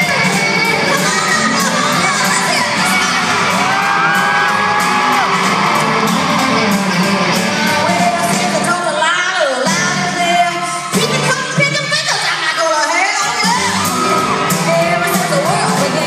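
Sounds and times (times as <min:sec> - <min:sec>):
women singing: 0:00.0 - 0:03.4
country band playing: 0:00.0 - 0:16.0
crowd cheering and whooping: 0:00.8 - 0:08.4, 0:13.2 - 0:16.0.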